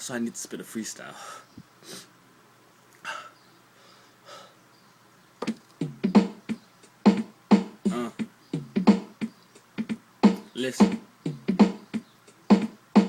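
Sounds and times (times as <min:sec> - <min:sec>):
beatboxing hip-hop beat: 0:05.4 - 0:13.0.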